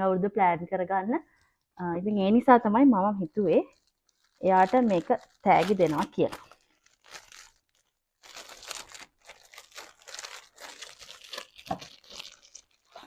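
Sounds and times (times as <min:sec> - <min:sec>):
packaging crinkling and rustling: 0:03.2 - 0:13.0.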